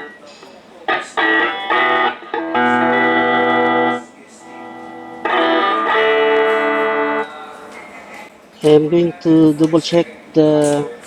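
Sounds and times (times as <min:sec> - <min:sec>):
electric guitar chords: 0:00.0 - 0:00.3, 0:00.9 - 0:07.8.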